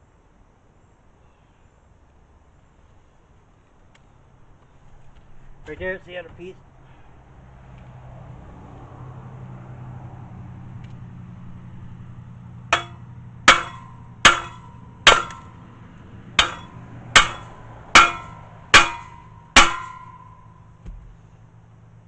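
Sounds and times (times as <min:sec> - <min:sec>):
hammer striking metal bolt: 0:12.7 - 0:15.6, 0:16.4 - 0:20.6.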